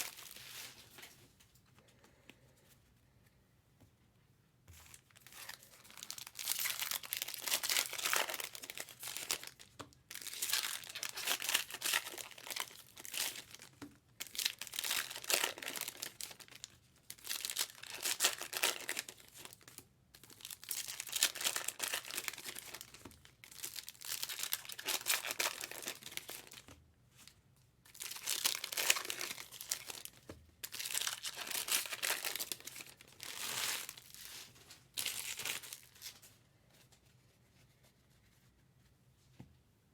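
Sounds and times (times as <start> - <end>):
foil wrappers tearing and crinkling: 0.0 - 1.1, 5.0 - 26.7, 27.9 - 36.2.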